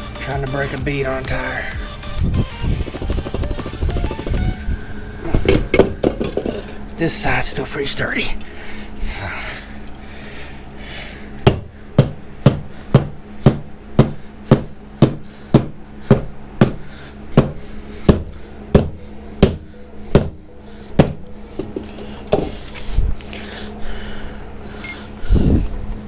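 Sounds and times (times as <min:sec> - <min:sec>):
hammer striking tire: 0:11.5 - 0:20.4, 0:21.0 - 0:22.5.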